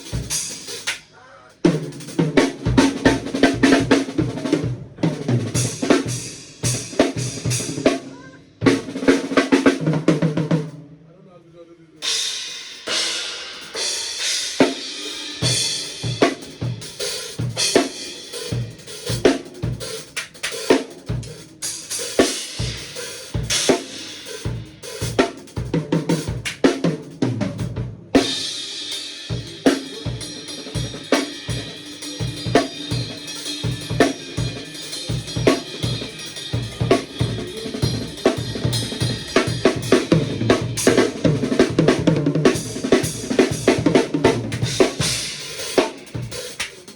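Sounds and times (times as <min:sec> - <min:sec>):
cymbal crashes ringing: 0:28.2 - 0:41.2.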